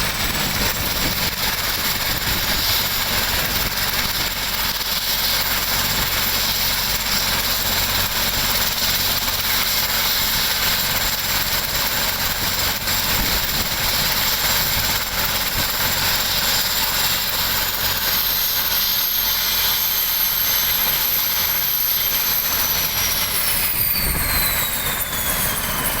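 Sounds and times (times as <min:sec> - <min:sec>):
aircraft turbine engine roaring: 0:00.0 - 0:26.0
high turbine whine: 0:00.0 - 0:26.0.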